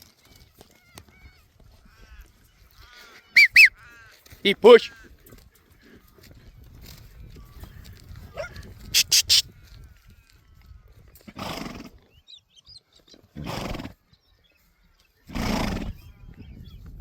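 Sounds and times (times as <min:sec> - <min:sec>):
animal calling hoarsely: 0:03.2 - 0:03.8, 0:04.5 - 0:05.0, 0:08.4 - 0:09.5.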